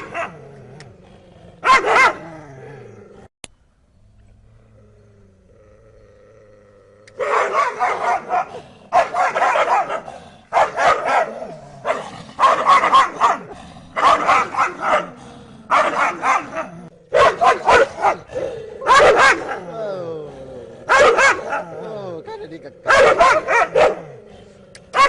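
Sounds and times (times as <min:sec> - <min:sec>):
dogs barking: 0:00.0 - 0:00.4, 0:01.6 - 0:02.2, 0:07.2 - 0:19.7, 0:20.8 - 0:21.8, 0:22.8 - 0:24.2.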